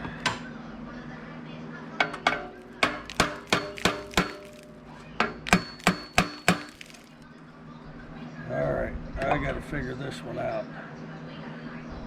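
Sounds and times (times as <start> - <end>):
hammer striking metal: 2.0 - 4.6, 5.2 - 6.8.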